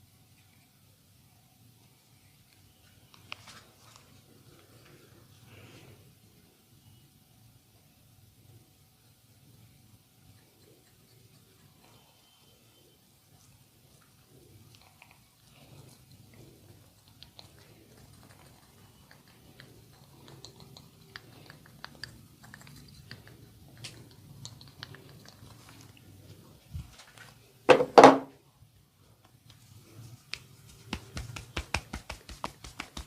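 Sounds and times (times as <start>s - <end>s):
hands rubbing skin: 29.4s - 33.0s
rapid even tapping: 30.3s - 33.0s.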